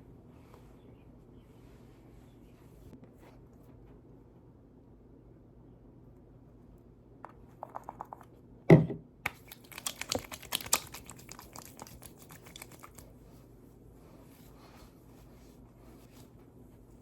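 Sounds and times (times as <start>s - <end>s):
rapid clicking and crinkling: 9.3s - 13.1s.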